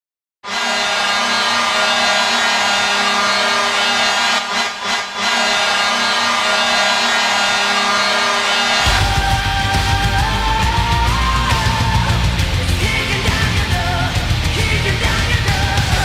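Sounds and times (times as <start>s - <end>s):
arena goal horn blast: 0.4s - 9.2s.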